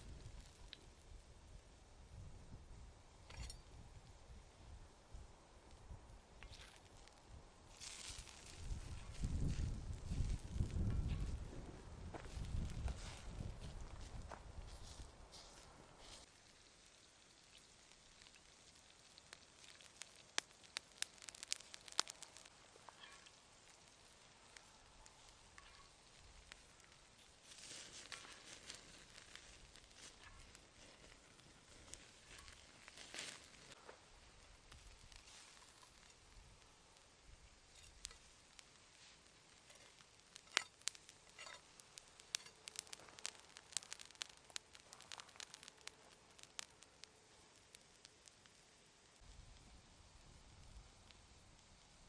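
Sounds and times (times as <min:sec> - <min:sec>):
faint steady hiss: 0:00.0 - 0:52.0
wood fire crackling: 0:00.0 - 0:52.0
sharp pops and snaps: 0:06.4 - 0:11.5, 0:16.9 - 0:33.8, 0:34.6 - 0:52.0.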